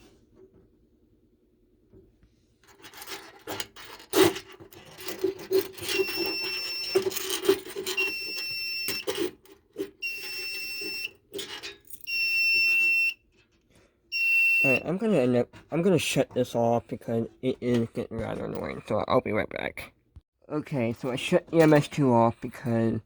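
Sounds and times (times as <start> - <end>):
handling rubbing and knocking: 2.6 - 12.1
alarm panel buzzer beeping: 5.8 - 9.3, 10.0 - 11.2, 12.0 - 13.2, 14.1 - 15.0.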